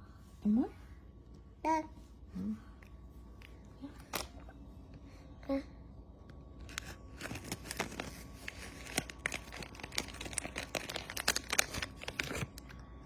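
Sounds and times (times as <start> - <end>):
packaging crinkling and rustling: 6.6 - 12.8.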